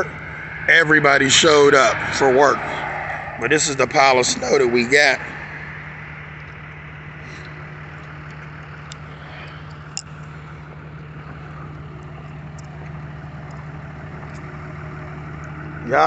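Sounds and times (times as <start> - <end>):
engine idling: 0.0 - 16.0.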